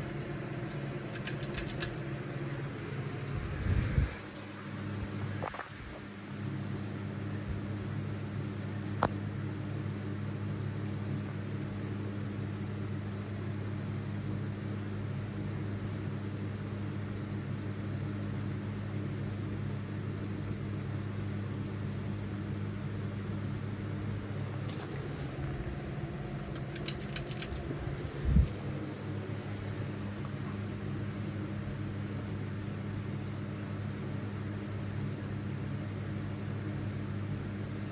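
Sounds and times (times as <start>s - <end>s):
sharp click: 0.0s - 2.1s
rattle of quick clicks: 0.0s - 2.2s, 24.7s - 28.9s
ceiling fan motor hum: 0.0s - 37.9s.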